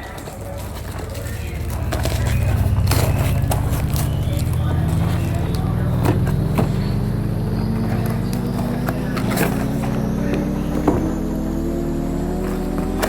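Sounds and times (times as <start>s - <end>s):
low rumble: 0.6s - 13.0s
mechanical hum rising in pitch: 0.6s - 13.0s.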